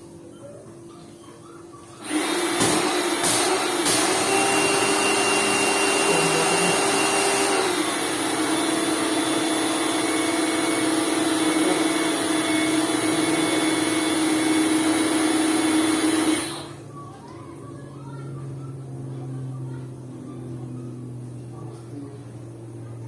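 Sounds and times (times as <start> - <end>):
pressure washer motor hum: 2.0 - 16.8.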